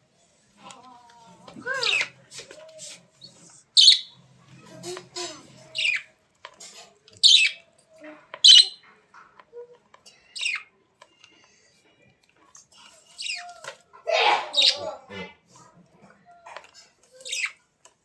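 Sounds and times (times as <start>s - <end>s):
bird squawking: 3.8s - 4.1s, 14.2s - 15.0s.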